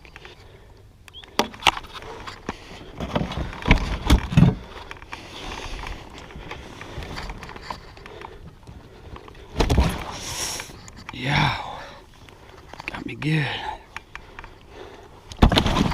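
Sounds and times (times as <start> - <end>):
knocks and clatter in a kayak: 1.4 - 5.2, 15.3 - 15.9
heavy thumps: 9.5 - 10.2.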